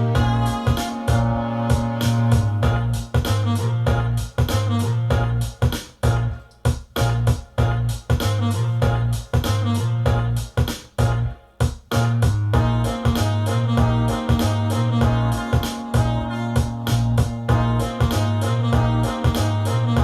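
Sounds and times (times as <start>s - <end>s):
electric piano: 0.0s - 4.1s, 12.6s - 20.0s
background music with beat: 0.0s - 20.0s
bass: 0.0s - 20.0s.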